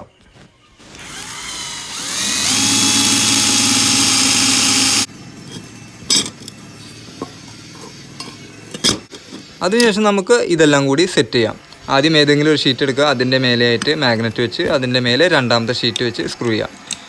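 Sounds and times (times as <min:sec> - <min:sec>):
electric drill boring metal: 0:00.8 - 0:09.4.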